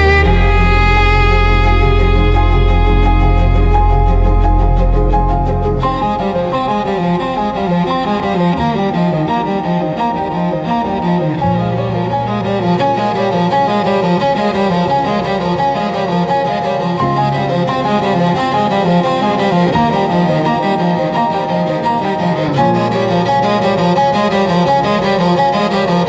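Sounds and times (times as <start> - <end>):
slow ambient cello music: 0.0 - 26.0.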